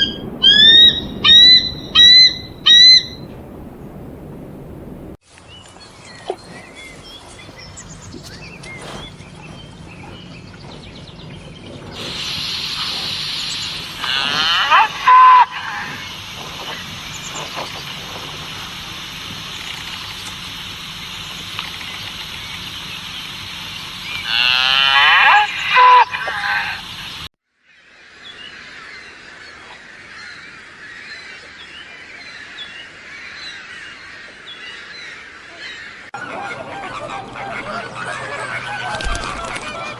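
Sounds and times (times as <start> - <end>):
animal calls: 0.0 - 5.1, 6.3 - 20.4, 24.0 - 27.2
outdoor background noise: 0.0 - 39.9.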